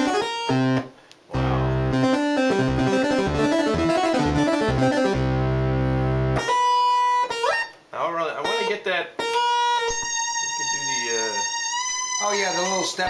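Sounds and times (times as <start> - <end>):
synthesizer bass line: 0.0 - 6.5
synthesizer keyboard riff: 0.0 - 7.8, 9.5 - 13.0.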